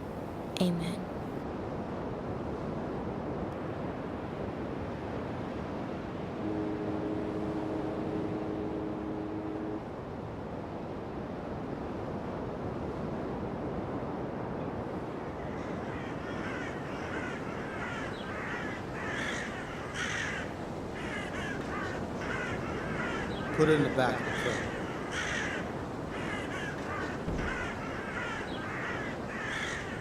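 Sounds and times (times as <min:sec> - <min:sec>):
birds cawing: 0:15.4 - 0:30.0.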